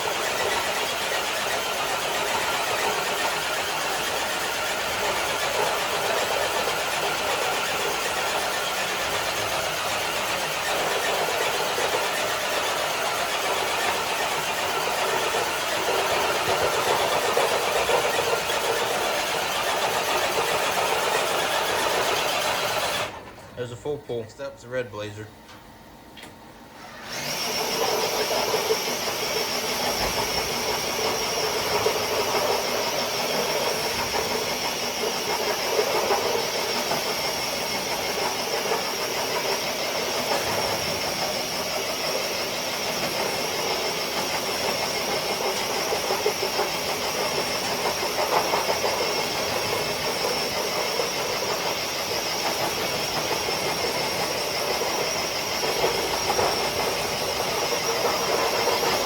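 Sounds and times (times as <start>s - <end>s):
motor and gear whine: 0.0s - 59.0s
sled scraping on concrete: 45.2s - 59.0s.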